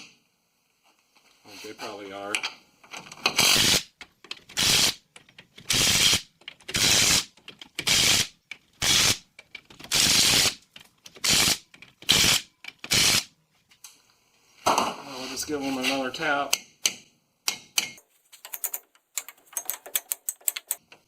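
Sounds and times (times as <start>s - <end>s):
hand ratchet clicking: 18.4s - 20.9s.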